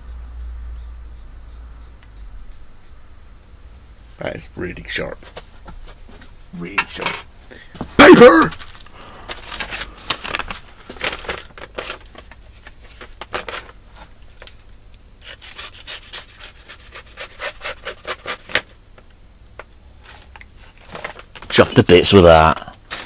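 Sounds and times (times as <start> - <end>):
knife slicing through paper: 15.2 - 18.6.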